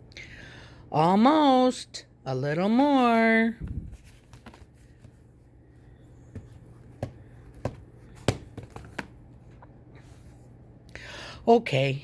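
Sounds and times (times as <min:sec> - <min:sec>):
book handling clicks and taps: 0:06.3 - 0:09.8.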